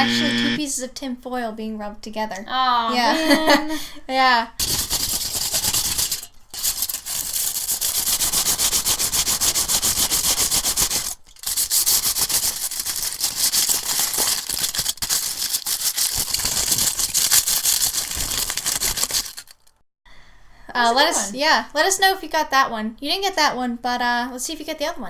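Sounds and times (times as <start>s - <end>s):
tin foil crinkling: 4.6s - 19.8s.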